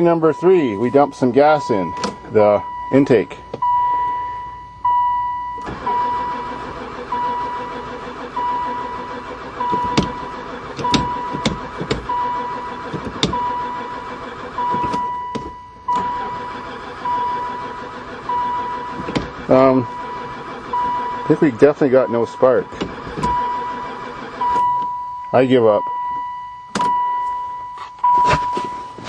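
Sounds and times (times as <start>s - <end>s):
warning chime beeping: 0.0s - 6.5s, 14.6s - 29.0s
starter cranking engine: 5.5s - 24.9s.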